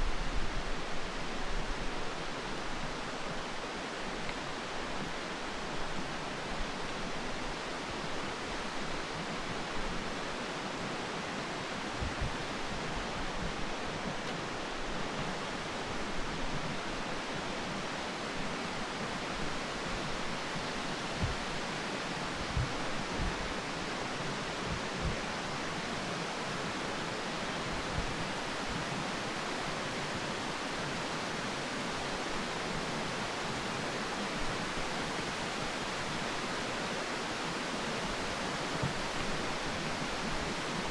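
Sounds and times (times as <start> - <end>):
rushing mountain water: 0.0 - 40.9
soft low thumps: 21.2 - 21.5, 22.5 - 23.4.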